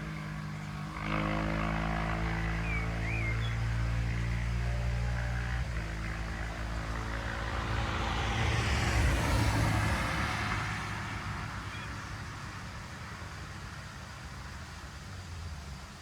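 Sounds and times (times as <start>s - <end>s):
motorcycle engine passing by: 0.0s - 11.6s.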